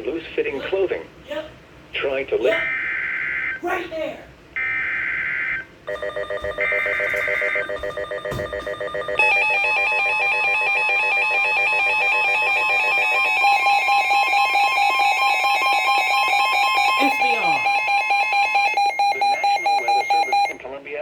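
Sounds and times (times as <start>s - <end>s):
rapidly warbling alarm: 2.5s - 3.9s, 4.6s - 20.7s
pulsing electronic alarm: 2.6s - 3.7s, 4.6s - 20.6s
digital alert data tones: 5.9s - 20.6s.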